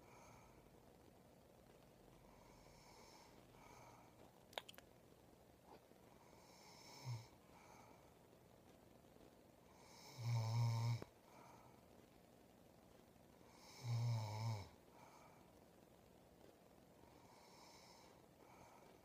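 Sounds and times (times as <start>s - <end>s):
woman snoring: 6.4s - 7.4s, 9.8s - 11.1s, 13.5s - 14.8s, 17.3s - 18.1s.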